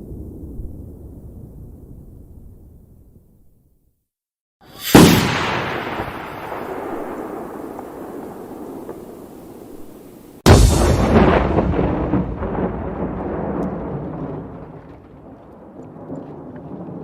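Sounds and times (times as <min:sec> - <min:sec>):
bomb explosion with rumble: 0:04.8 - 0:09.1, 0:10.5 - 0:17.0.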